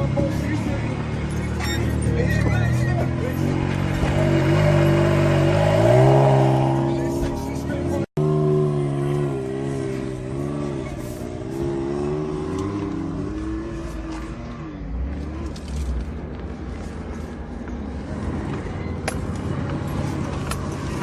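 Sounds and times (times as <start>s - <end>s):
off-road vehicle engine revving: 0.0s - 16.2s.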